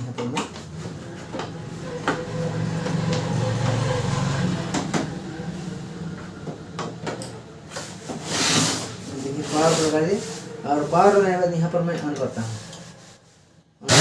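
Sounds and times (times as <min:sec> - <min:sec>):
rustling scrape: 0:07.8 - 0:11.5.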